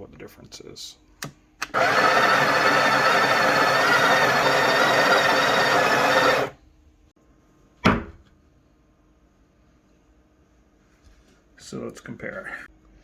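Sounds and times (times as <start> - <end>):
coffee grinder grinding whine: 1.7 - 6.6.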